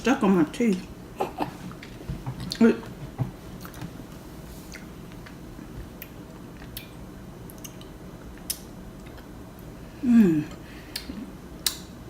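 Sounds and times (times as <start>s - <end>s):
wet chewing clicks and smacks: 4.7s - 9.7s, 10.9s - 11.9s
person humming mm: 10.0s - 11.2s.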